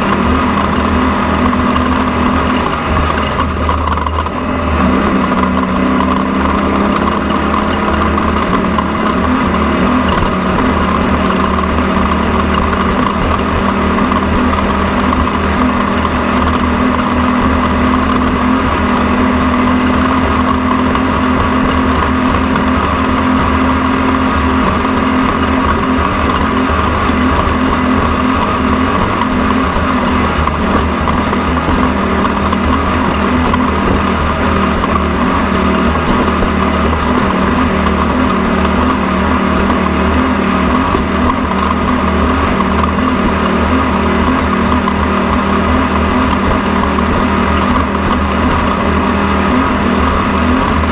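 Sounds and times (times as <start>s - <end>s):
engine whining steadily: 0.0s - 50.9s.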